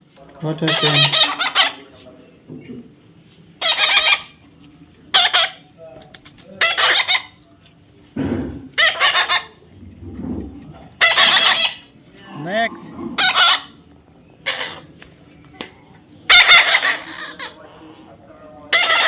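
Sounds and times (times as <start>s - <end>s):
parrot calling loudly: 0.5s - 1.9s, 3.6s - 4.4s, 5.1s - 5.7s, 6.6s - 7.4s, 8.8s - 9.6s, 11.0s - 11.9s, 13.1s - 13.8s, 14.4s - 14.9s, 16.3s - 18.0s, 18.7s - 19.0s.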